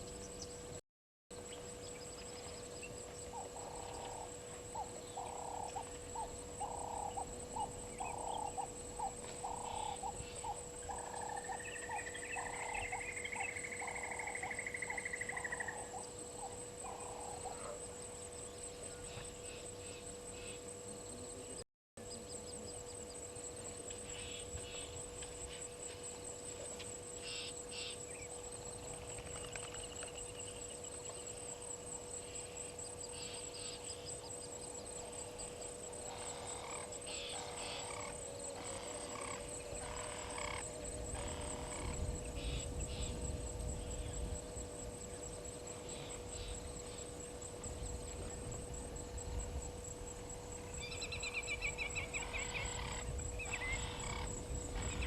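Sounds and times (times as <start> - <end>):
steady high whine: 0.0 - 55.0
repeated animal call: 3.3 - 17.8, 36.0 - 43.2, 50.8 - 55.0.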